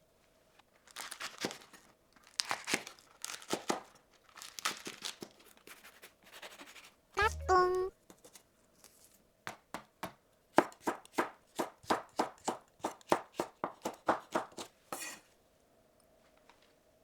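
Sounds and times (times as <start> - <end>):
knife chopping on cutting board: 10.6 - 15.2.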